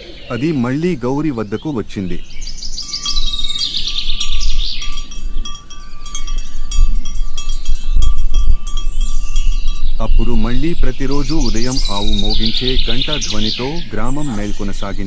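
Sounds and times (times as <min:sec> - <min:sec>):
birds chirping: 0:00.0 - 0:15.0
chime-like tinkling: 0:02.8 - 0:13.4
deep low thumps: 0:04.1 - 0:14.6.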